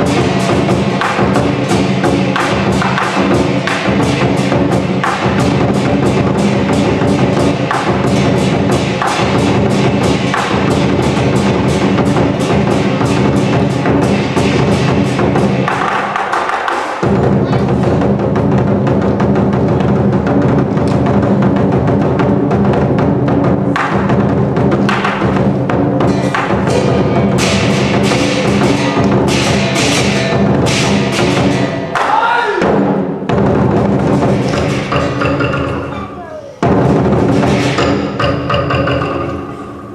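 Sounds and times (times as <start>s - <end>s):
large drum beating: 0.0s - 16.1s, 32.6s - 39.2s.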